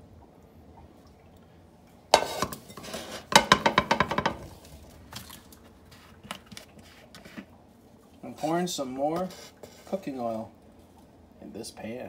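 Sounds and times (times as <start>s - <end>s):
cookware clattering: 2.2s - 4.4s.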